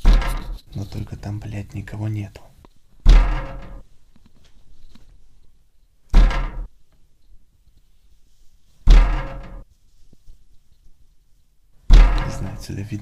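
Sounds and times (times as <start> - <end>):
glass rattling in frame: 0.0 - 0.7, 3.0 - 3.9, 6.1 - 6.7, 8.8 - 9.7, 11.9 - 12.7
heavy thuds on window glass: 3.0 - 3.8, 6.1 - 6.7, 8.8 - 9.6, 11.9 - 12.6.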